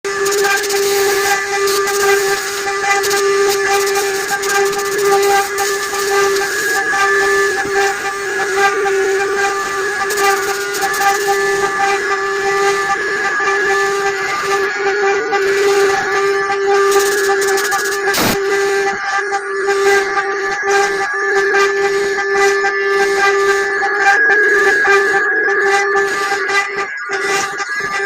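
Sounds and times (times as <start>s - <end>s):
router spindle whining: 0.0s - 28.0s
bit cutting wood hiss: 0.1s - 19.0s.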